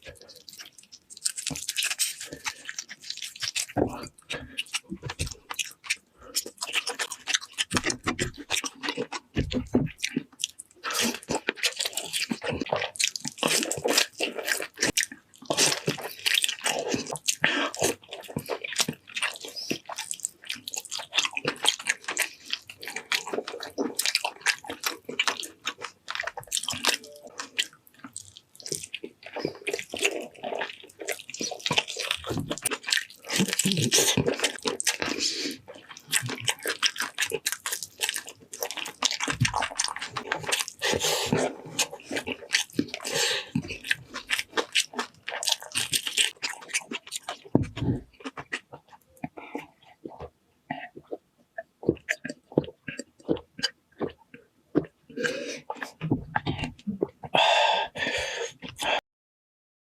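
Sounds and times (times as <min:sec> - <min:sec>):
person chewing food: 0:00.0 - 0:59.0.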